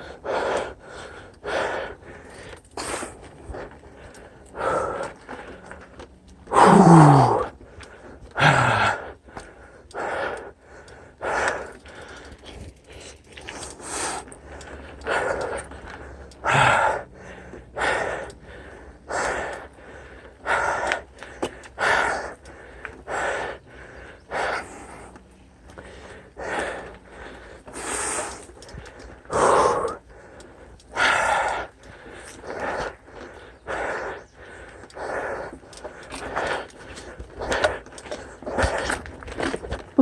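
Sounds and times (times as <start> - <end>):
heavy rhythmic breathing: 0.0 - 40.0.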